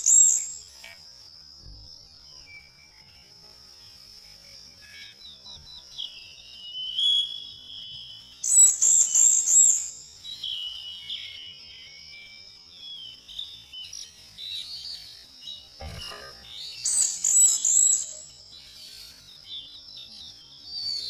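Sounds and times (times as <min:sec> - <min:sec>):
high-pitched bird chorus: 0:00.0 - 0:00.9, 0:05.1 - 0:21.0.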